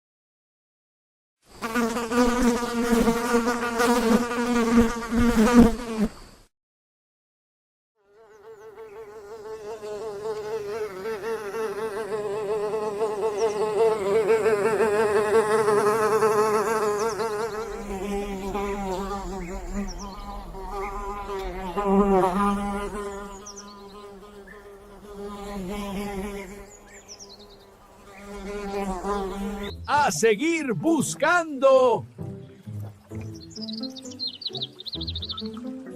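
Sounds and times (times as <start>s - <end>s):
fly buzzing in flight: 1.6s - 6.2s, 8.0s - 29.8s.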